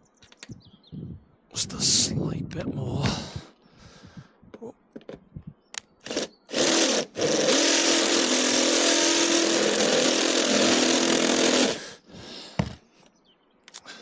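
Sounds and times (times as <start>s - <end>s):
drill click: 6.0s - 11.8s
power drill cutting into steel: 6.0s - 12.0s.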